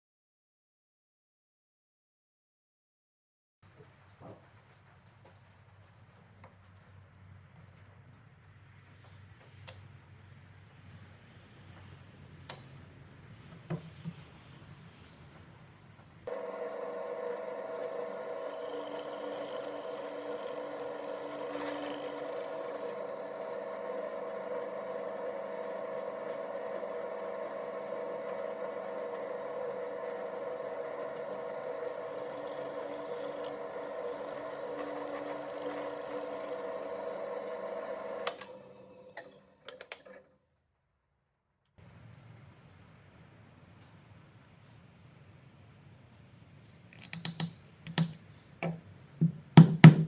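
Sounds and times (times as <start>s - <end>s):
power tool motor running: 16.3s - 39.8s.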